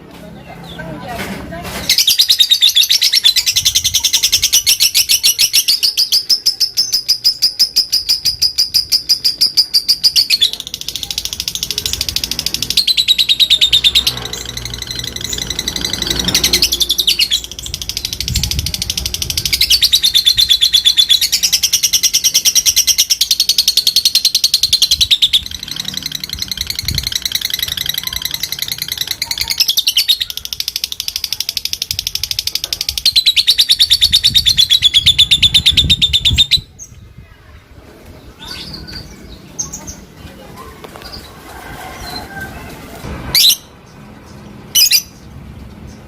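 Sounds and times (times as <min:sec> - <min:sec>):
lovebird rapid chatter: 0:01.8 - 0:36.7.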